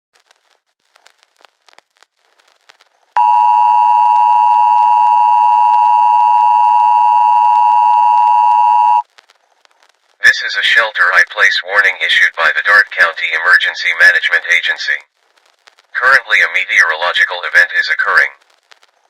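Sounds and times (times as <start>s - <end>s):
faint crackles: 0.1s - 19.0s
harsh two-tone alert signal: 3.2s - 9.0s.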